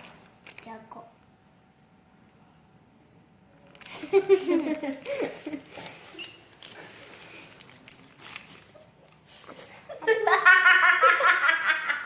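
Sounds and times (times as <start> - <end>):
girl laughing: 3.9 - 6.3, 9.5 - 12.0.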